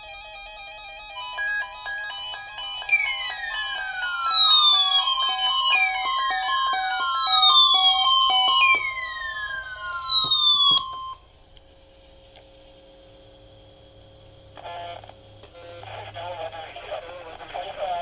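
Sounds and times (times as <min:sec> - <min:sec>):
tones sliding downward: 0:01.4 - 0:11.2.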